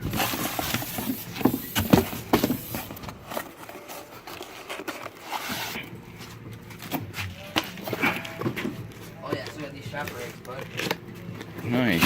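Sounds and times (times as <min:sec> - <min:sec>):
parts and box knocking: 0:00.0 - 0:03.5.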